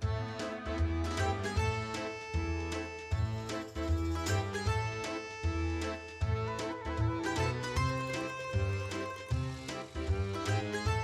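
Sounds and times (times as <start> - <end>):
plucked-string instrumental music: 0.0 - 11.0.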